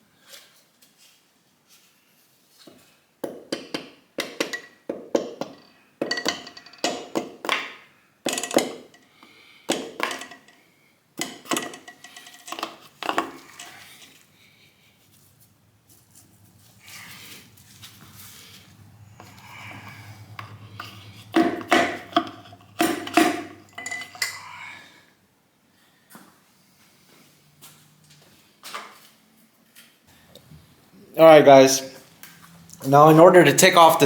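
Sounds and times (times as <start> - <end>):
metal tools clanking: 5.5 - 7.1, 11.2 - 14.2, 17.1 - 24.6.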